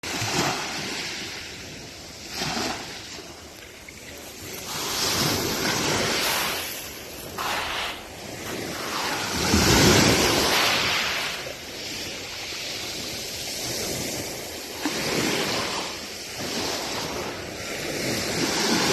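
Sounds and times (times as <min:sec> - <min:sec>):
waves breaking on beach: 0:00.0 - 0:18.9.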